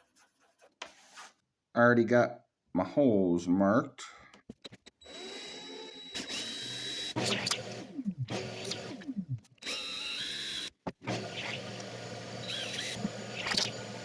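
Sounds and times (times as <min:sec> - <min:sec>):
electric drill boring into wood: 0:05.0 - 0:14.0.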